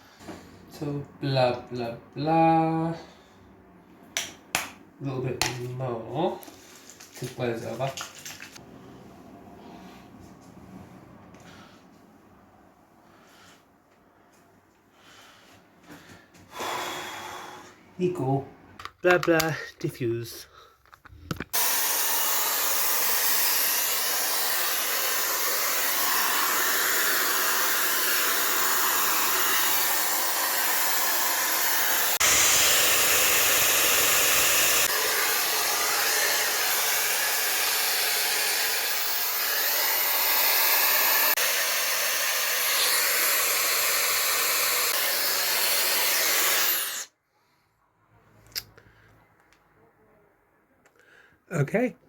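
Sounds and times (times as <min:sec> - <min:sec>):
hair dryer blowing: 0:21.5 - 0:47.1.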